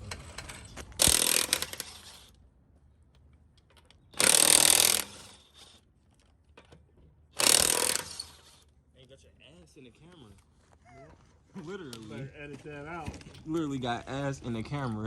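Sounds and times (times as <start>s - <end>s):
power tool bursts: 1.0s - 2.3s, 4.2s - 5.8s, 7.4s - 8.6s.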